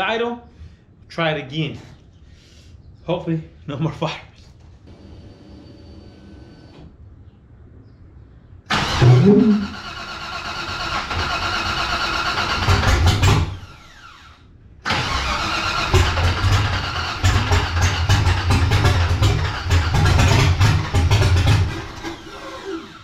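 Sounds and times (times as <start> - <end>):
car engine starting and stalling: 8.7 - 23.0
engine running unevenly: 14.9 - 23.0.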